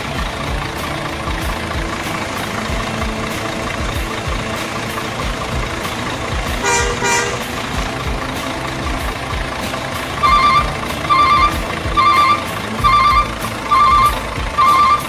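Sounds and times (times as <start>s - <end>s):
engine-like rumble: 0.0s - 15.0s
truck horn toots: 4.6s - 8.8s, 9.8s - 15.0s
reversing beeps: 10.3s - 15.0s.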